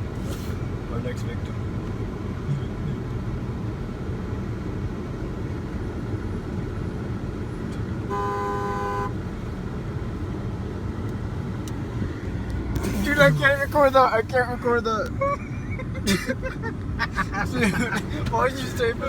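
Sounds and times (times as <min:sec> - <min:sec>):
car rumbling on road: 0:00.0 - 0:19.0
car horn honking: 0:08.0 - 0:09.2.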